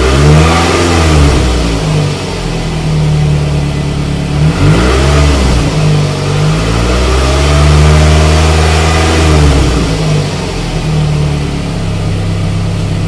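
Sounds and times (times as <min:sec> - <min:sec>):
car engine revving: 0:00.0 - 0:13.0.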